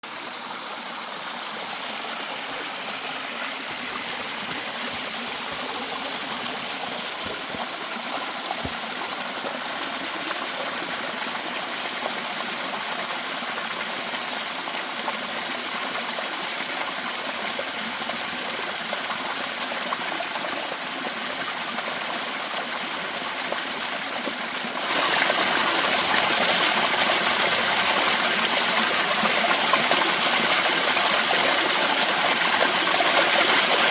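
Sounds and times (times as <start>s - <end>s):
stream rushing water: 0.1s - 33.9s.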